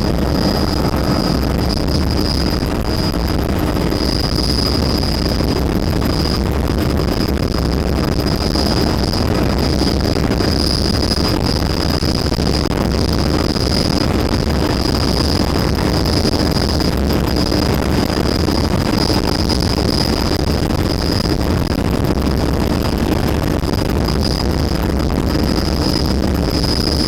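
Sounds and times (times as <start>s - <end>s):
helicopter rotor and engine drone: 0.0s - 21.3s
high whine: 0.0s - 27.0s.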